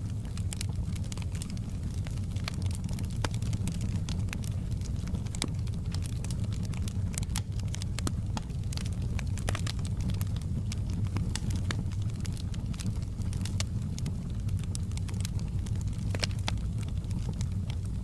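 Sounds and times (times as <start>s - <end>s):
low rumble of flames: 0.0s - 18.0s
wood fire crackling and popping: 0.0s - 18.0s.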